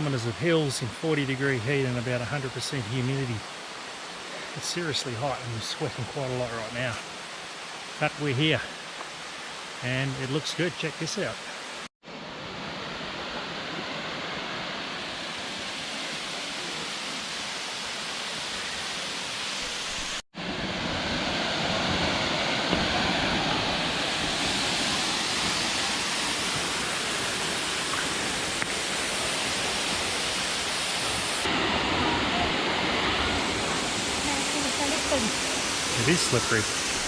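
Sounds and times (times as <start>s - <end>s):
waterfall rushing: 0.0s - 37.0s.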